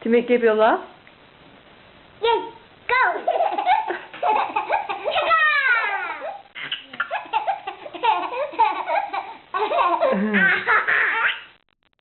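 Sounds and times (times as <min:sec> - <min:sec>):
person making playful sounds: 0:03.0 - 0:08.8
baby laughing: 0:03.0 - 0:11.5.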